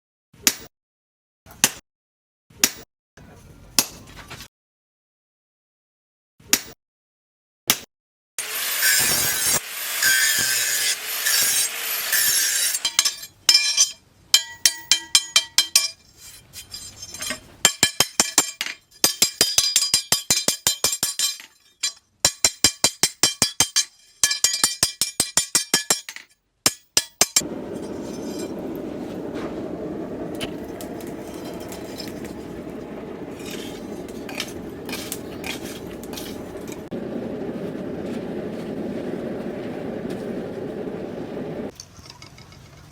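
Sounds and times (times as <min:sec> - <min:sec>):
hammer striking steel on anvil: 0:08.8 - 0:16.0, 0:17.0 - 0:28.8
low rushing noise: 0:27.4 - 0:41.7.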